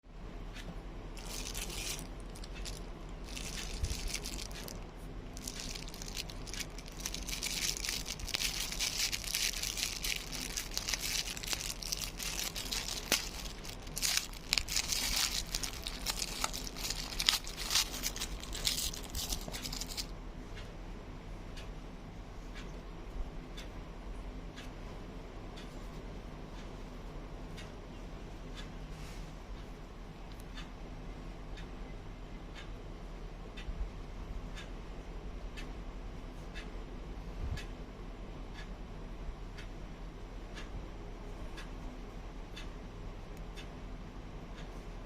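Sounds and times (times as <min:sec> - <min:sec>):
faint steady low hum: 0:00.1 - 0:45.0
packaging crinkling and rustling: 0:01.2 - 0:20.1.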